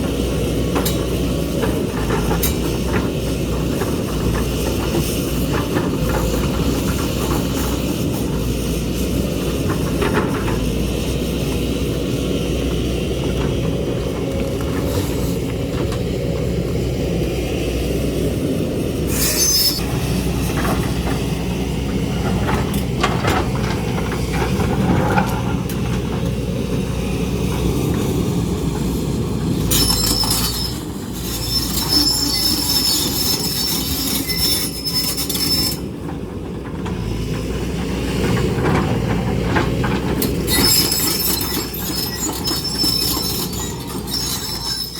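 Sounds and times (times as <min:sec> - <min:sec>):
excavator engine drone: 0:00.0 - 0:44.9
high metallic squeals and scrapes: 0:19.1 - 0:19.9, 0:29.7 - 0:35.8, 0:40.2 - 0:44.9.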